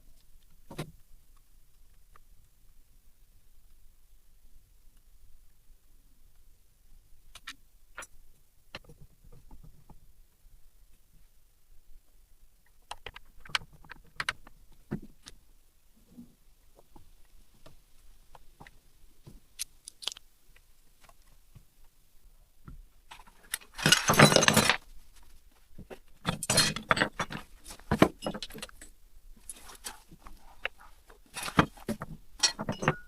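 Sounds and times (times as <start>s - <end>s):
metal parts clinking and rattling: 23.5s - 24.8s, 26.2s - 28.9s, 31.3s - 31.8s, 32.4s - 33.0s.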